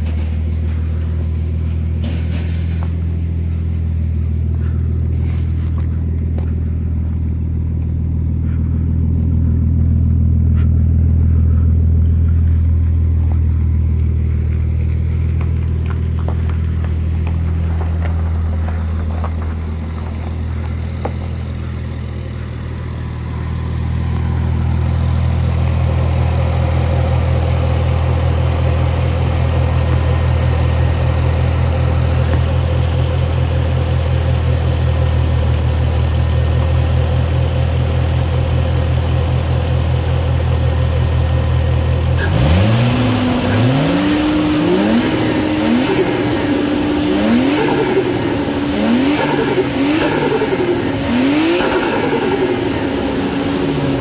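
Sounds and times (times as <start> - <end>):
car engine idling: 0.0 - 54.0
engine revving in throttle blips: 0.0 - 54.0
turbo fluttering: 43.0 - 54.0.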